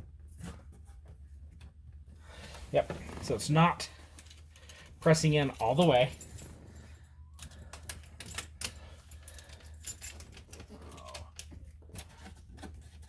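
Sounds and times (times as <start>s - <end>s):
keys jangling on key ring: 5.2s - 11.2s.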